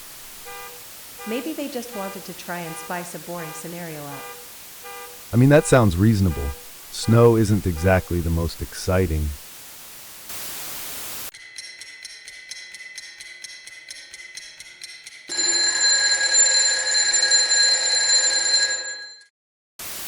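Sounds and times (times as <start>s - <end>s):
electronic ringing: 0.5s - 8.0s, 15.3s - 19.3s.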